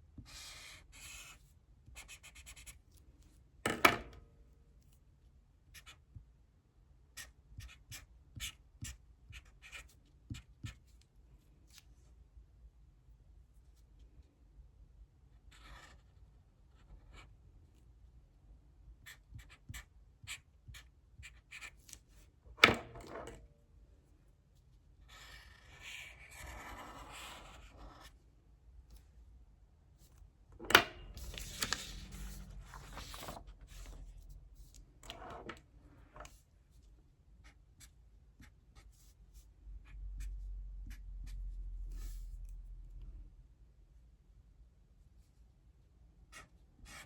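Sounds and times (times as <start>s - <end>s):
pen scratching on paper: 0.3s - 1.4s, 2.0s - 2.8s, 7.2s - 10.9s, 15.5s - 16.1s, 25.1s - 28.1s.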